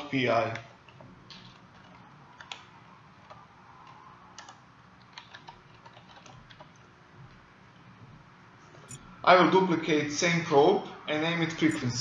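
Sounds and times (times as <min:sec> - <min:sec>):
faint keyboard typing: 0:00.5 - 0:07.4.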